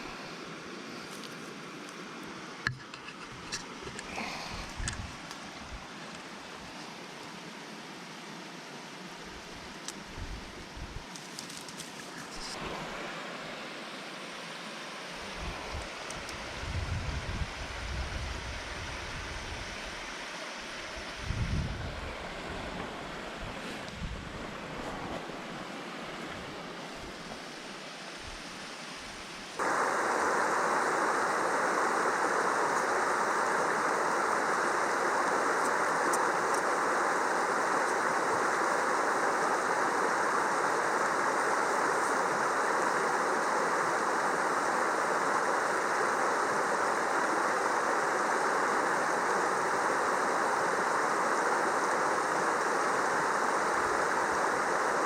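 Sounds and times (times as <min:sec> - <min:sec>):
mountain stream rushing: 0:00.0 - 0:55.0
wind buffeting microphone: 0:16.4 - 0:19.8, 0:21.0 - 0:25.2.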